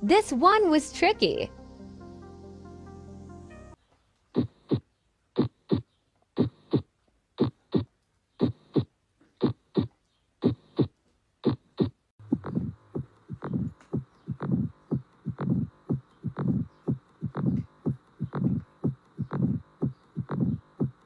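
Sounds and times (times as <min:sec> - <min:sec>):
music: 0:00.0 - 0:03.8
noisy heartbeat: 0:04.4 - 0:21.0
heartbeat lub-dub: 0:06.4 - 0:21.0.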